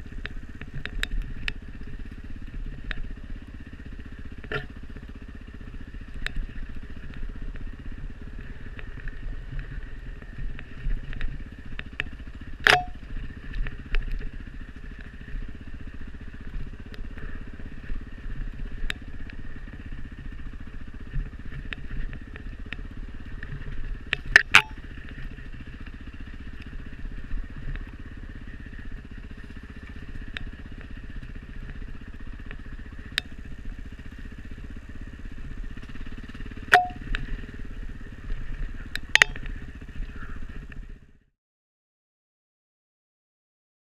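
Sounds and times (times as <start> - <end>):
dirt bike engine running: 0.0 - 41.3
small clicks and clatter: 0.1 - 3.1, 6.0 - 7.7, 8.4 - 15.4, 16.8 - 27.0.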